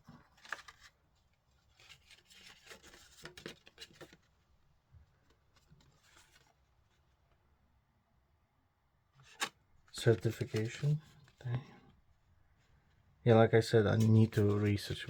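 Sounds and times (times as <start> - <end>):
paper and cardboard rustling: 0.0 - 4.4, 5.2 - 7.0, 9.2 - 11.5, 13.9 - 15.0.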